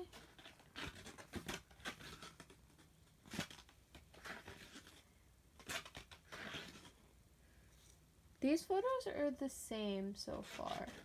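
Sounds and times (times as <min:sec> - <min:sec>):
book pages turning: 0:00.0 - 0:07.0, 0:10.4 - 0:11.0.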